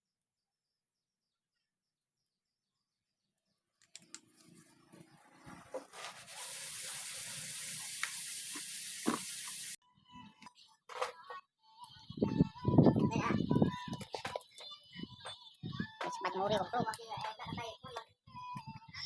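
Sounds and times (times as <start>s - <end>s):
loud steady hiss: 6.3s - 9.8s.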